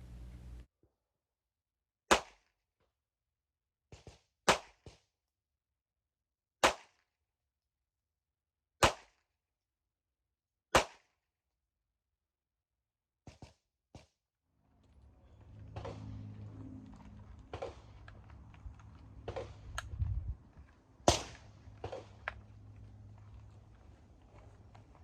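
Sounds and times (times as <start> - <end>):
pistol shots: 21.0 - 22.4.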